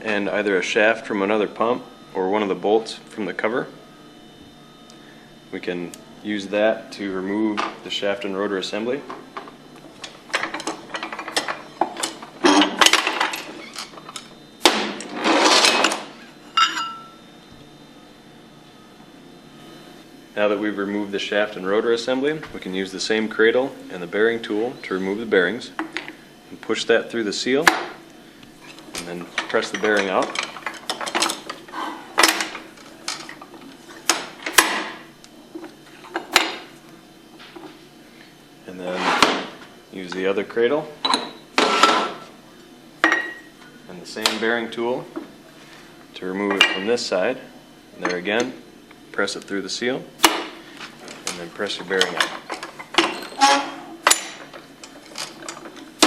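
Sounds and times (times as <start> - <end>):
metal knocking and clinking: 16.6 - 17.1
ringing metal clink: 16.6 - 17.2.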